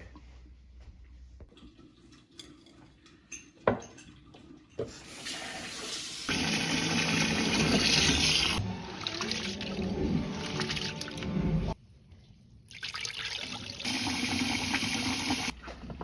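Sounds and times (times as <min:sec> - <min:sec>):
water running: 0:04.9 - 0:11.8, 0:12.7 - 0:15.5.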